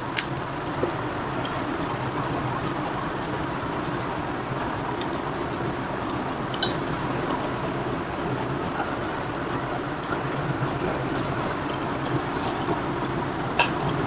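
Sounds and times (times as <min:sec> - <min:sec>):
steady background hum: 0:00.0 - 0:14.0
dish clink: 0:06.6 - 0:06.9.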